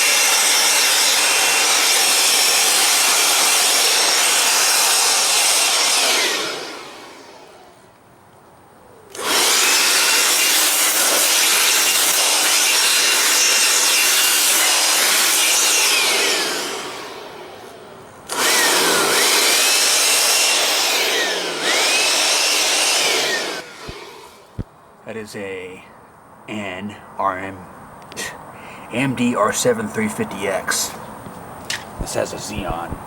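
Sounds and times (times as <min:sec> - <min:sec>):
air blower rushing air: 0:00.0 - 0:07.8, 0:09.1 - 0:24.7
blower whine: 0:00.0 - 0:08.1, 0:09.1 - 0:24.7.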